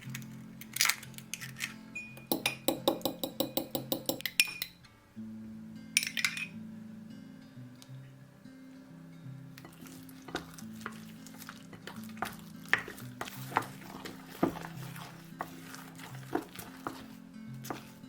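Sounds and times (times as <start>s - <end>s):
acoustic guitar music: 5.2s - 18.0s.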